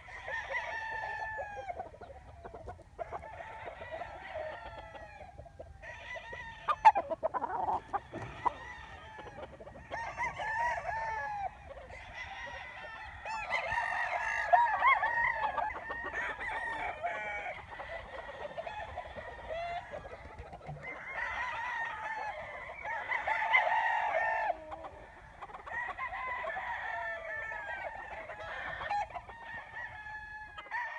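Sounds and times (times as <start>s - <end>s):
chickens clucking: 0.0s - 30.9s
roosters crowing: 0.0s - 30.9s.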